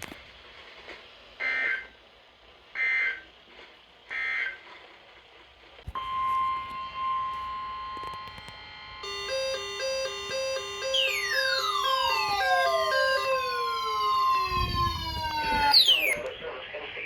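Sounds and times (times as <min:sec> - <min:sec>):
steady electronic alert tone: 0:06.0 - 0:16.2
digital data tone screech: 0:06.0 - 0:16.3
two-note alternating alarm tone: 0:06.0 - 0:16.3.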